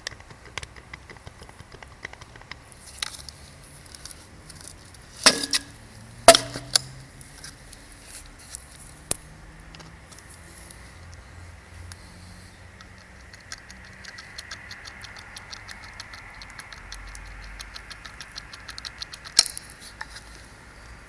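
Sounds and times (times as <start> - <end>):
fast irregular ticking: 0.0 - 3.4, 12.7 - 20.1.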